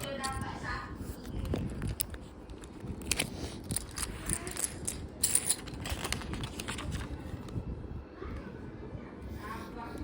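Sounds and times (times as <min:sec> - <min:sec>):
plastic pieces clicking and rattling: 0:01.4 - 0:07.4.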